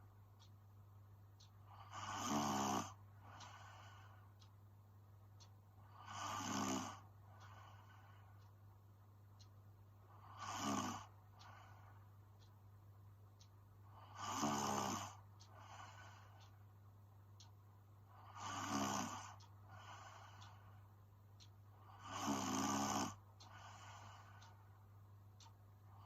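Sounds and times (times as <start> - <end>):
woman snoring: 1.8 - 3.6, 5.9 - 7.0, 10.2 - 11.1, 14.0 - 15.2, 18.2 - 20.0, 21.9 - 24.0
soft breath: 2.9 - 4.5, 5.8 - 8.5, 10.1 - 12.1, 15.0 - 16.6, 18.1 - 21.0, 23.4 - 24.8.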